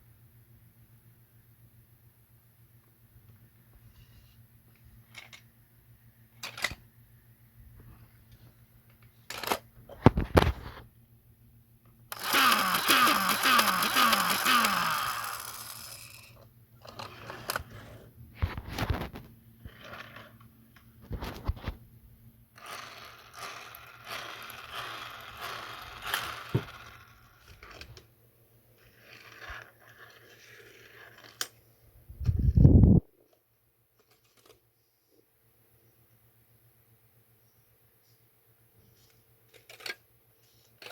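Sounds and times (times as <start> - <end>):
plastic toy pieces clicking: 12.1 - 17.6, 22.6 - 27.0.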